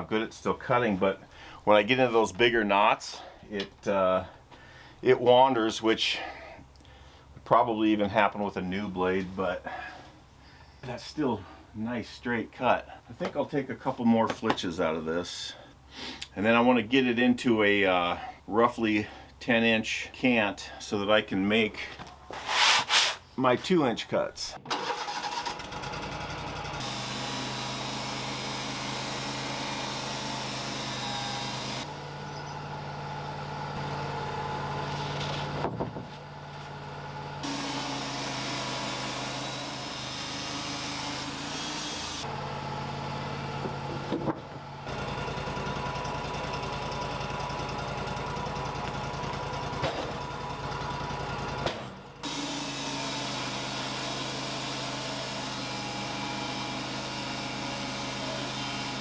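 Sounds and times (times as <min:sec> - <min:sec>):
band blade sawing log: 0:22.3 - 0:23.3, 0:26.8 - 0:31.9, 0:37.4 - 0:42.3, 0:52.2 - 0:59.0
sawmill engine running: 0:24.7 - 0:59.0.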